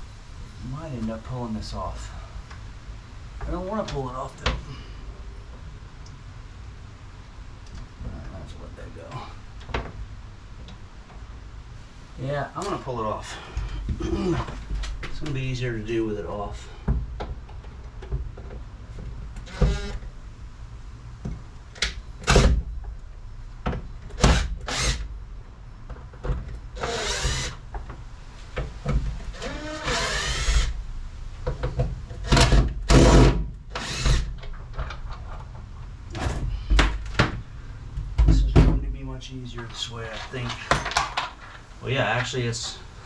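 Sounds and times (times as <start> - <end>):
cordless drill running: 19.5 - 20.0, 24.3 - 25.1, 26.8 - 27.6, 29.4 - 30.8, 32.5 - 34.3.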